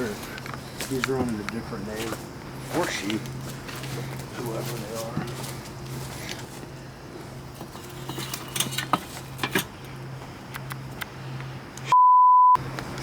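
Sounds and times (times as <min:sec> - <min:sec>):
censor bleep: 0:11.9 - 0:12.6.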